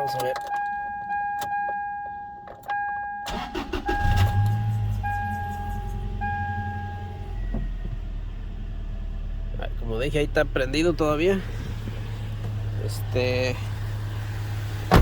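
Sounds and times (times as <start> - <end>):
dashboard warning chime beeping: 0.0 - 7.5
engine cranking and idling: 3.3 - 15.0.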